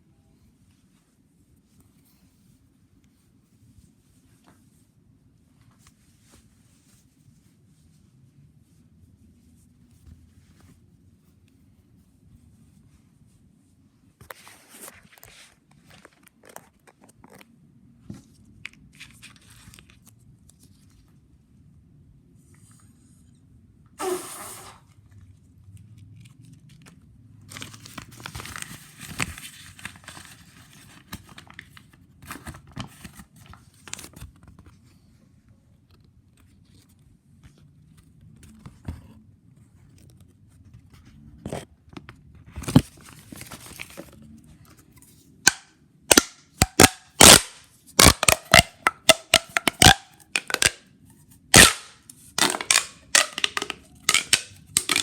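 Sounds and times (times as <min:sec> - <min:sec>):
fidget toys rustling and crinkling: 0:25.8 - 0:35.0, 0:46.7 - 0:55.0.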